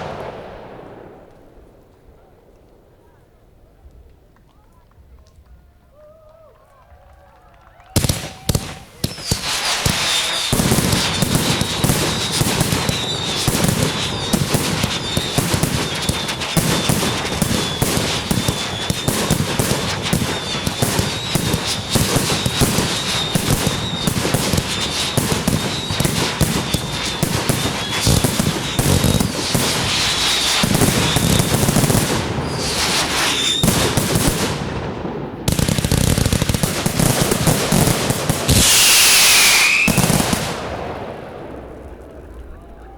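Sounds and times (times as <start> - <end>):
fireworks bangs and crackling: 0.0 - 5.7, 7.9 - 42.9
high wavering whistle: 38.6 - 40.0.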